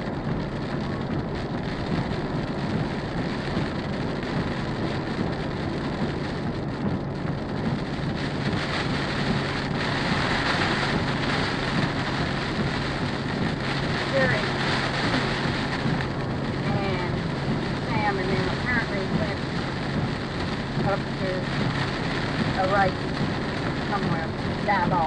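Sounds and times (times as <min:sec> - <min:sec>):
heavy rain on car: 0:00.0 - 0:25.0
road noise: 0:00.0 - 0:25.0.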